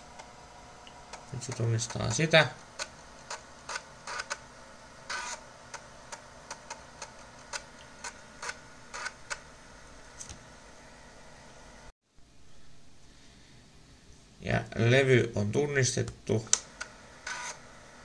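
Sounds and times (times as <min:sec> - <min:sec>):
floppy disk drive clicking: 0:05.1 - 0:09.5.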